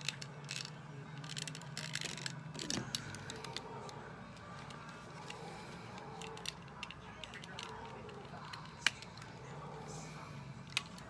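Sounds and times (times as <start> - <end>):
plastic figure parts clicking: 0.0 - 4.0, 4.6 - 9.3.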